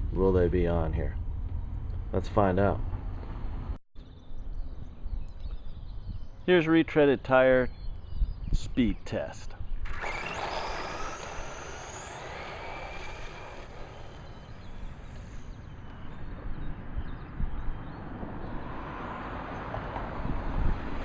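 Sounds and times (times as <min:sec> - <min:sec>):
electric motor whining: 0:09.8 - 0:16.5
tires and wind hiss: 0:09.8 - 0:21.0.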